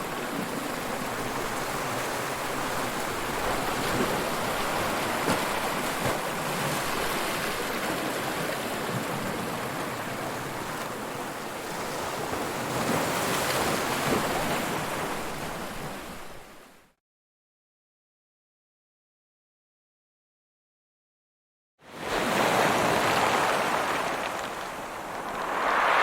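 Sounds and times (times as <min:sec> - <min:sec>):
ocean waves breaking: 0:00.0 - 0:16.5, 0:21.9 - 0:26.0.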